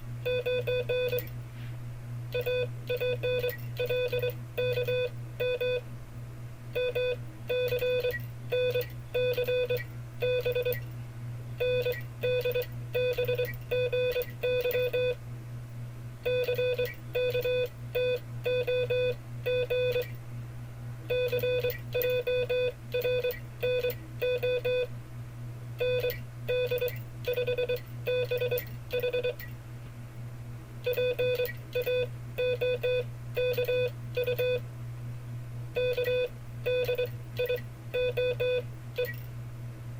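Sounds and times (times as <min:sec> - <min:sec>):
morse code tone: 0:16.3 - 0:20.0, 0:35.8 - 0:39.1.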